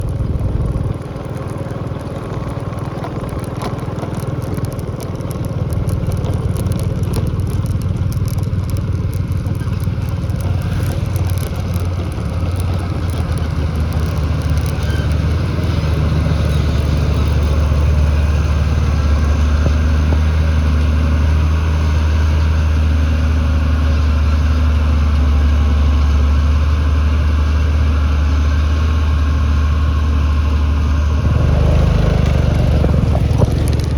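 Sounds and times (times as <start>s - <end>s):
crackling: 0.0s - 21.7s, 31.2s - 33.9s
diesel engine running: 0.0s - 33.9s.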